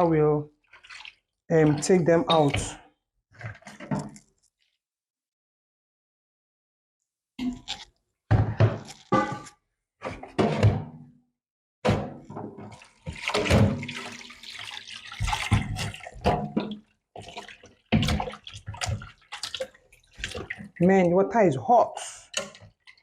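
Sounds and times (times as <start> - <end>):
hot water pouring and splashing: 0.0 - 4.0, 12.5 - 23.0.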